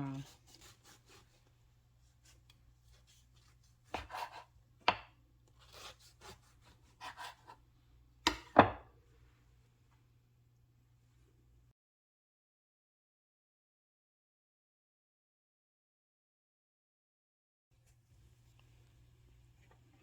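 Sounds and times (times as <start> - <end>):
knife cutting bread: 0.1 - 7.7.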